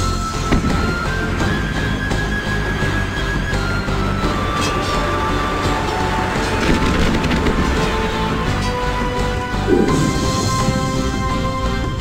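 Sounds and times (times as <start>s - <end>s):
background music with steady beat: 0.0s - 12.0s
sharp hit: 9.7s - 12.0s.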